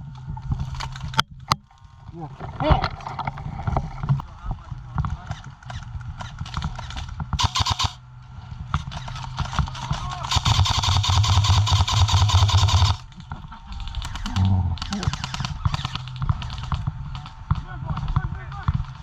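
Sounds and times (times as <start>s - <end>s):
airsoft rifle firing bursts: 5.7s - 8.0s, 8.8s - 13.1s, 13.8s - 17.3s.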